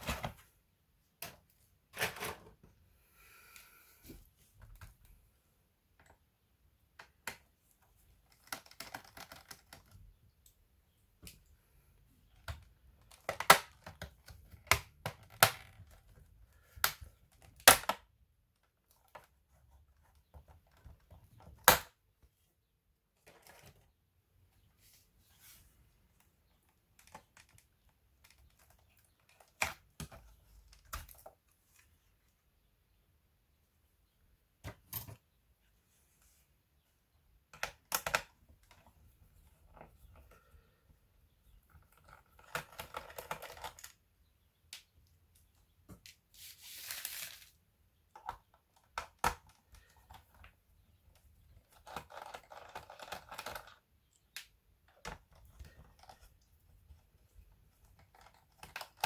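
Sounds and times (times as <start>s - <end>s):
plastic laptop parts clicking: 8.3s - 10.0s, 12.4s - 18.1s.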